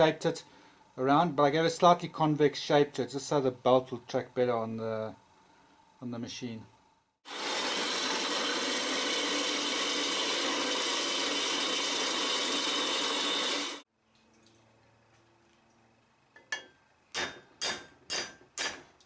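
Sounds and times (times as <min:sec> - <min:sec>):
power tool hissing: 0:07.3 - 0:13.9.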